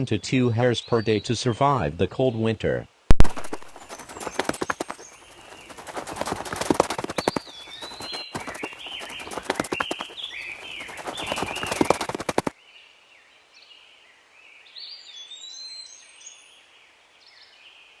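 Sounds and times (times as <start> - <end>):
rapid loud thumps: 3.1 - 12.5
birds singing: 3.3 - 12.5.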